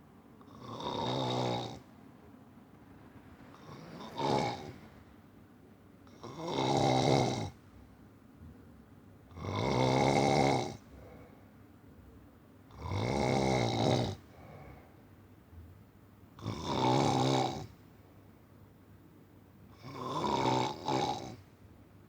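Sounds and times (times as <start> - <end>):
low-pitched snoring: 0.4 - 5.4, 6.1 - 7.6, 9.4 - 10.8, 12.8 - 14.2, 16.4 - 17.7, 19.8 - 21.4
faint breath: 10.9 - 11.6, 14.3 - 15.1.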